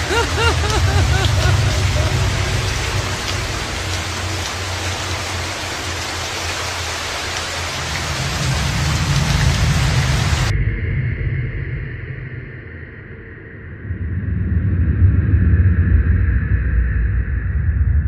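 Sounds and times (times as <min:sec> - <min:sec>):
low rumble: 0:00.0 - 0:06.2
heavy rain hissing: 0:00.0 - 0:10.5.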